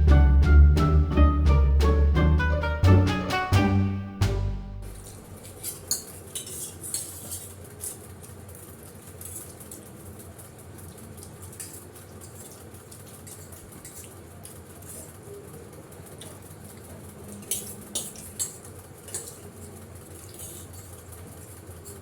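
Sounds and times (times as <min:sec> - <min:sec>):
cutlery clinking on plates: 0:04.9 - 0:07.6, 0:17.4 - 0:19.5.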